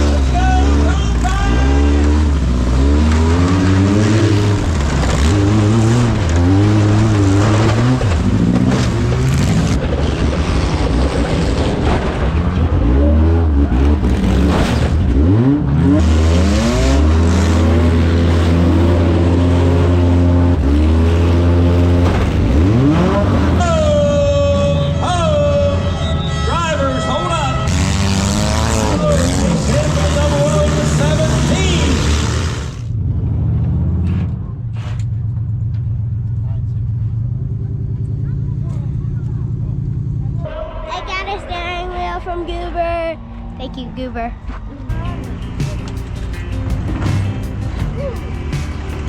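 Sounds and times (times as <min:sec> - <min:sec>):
cars crashing: 0:00.0 - 0:35.3
car engines revving: 0:00.0 - 0:49.0.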